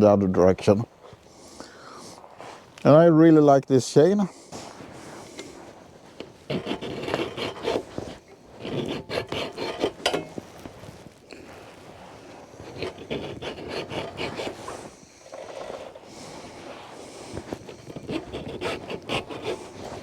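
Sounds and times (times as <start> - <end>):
scraping against wood: 4.6 - 20.0.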